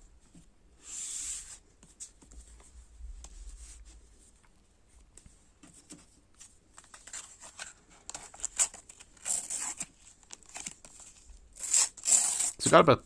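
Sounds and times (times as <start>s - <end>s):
sticker packets rustling: 6.8s - 12.7s.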